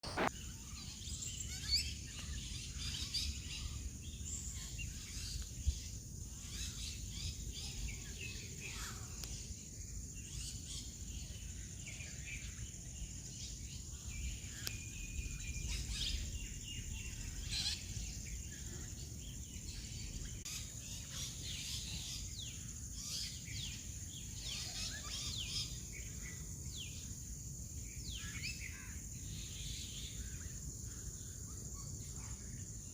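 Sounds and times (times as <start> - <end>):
birds chirping: 0.0 - 0.5
high insect drone: 0.1 - 32.9.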